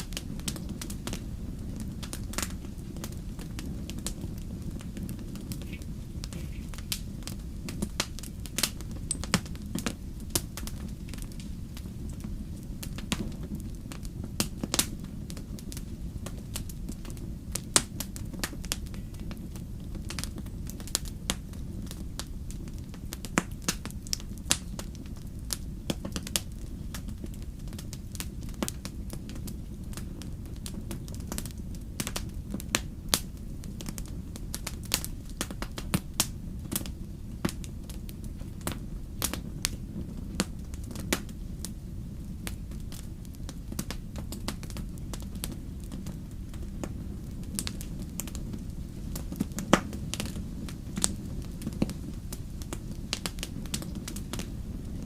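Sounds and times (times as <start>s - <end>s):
campfire crackling and popping: 0.0s - 55.0s
steady low rumble: 0.0s - 55.0s.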